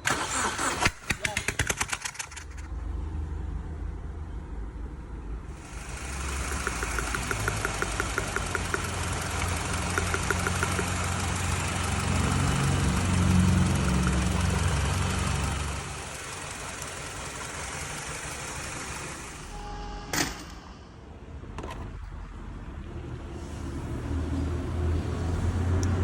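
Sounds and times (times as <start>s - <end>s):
car engine idling with ticking: 5.6s - 19.4s.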